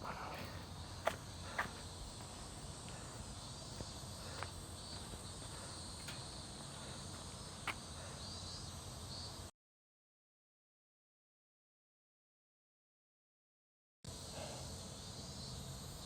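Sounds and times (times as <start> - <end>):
insects chirring: 0.0 - 9.5, 14.1 - 16.0.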